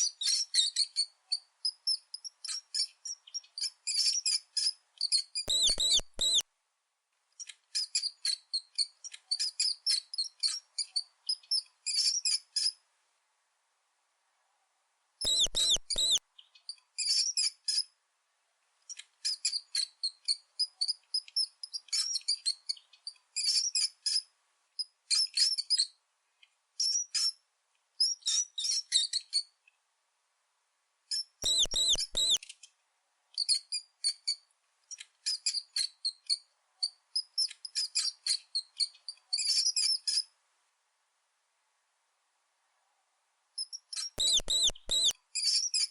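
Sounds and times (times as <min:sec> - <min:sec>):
mouse squeaking: 0:00.0 - 0:06.4, 0:07.4 - 0:12.8, 0:15.2 - 0:17.9, 0:18.9 - 0:26.0, 0:26.8 - 0:27.4, 0:28.0 - 0:29.5, 0:31.1 - 0:32.5, 0:33.4 - 0:40.3, 0:43.6 - 0:45.9.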